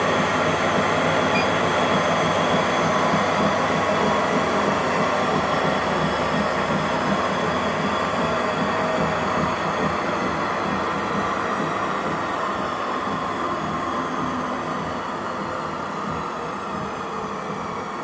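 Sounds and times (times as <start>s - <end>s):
treadmill motor and belt whir: 0.0s - 18.0s
faint steady whine: 7.2s - 18.0s.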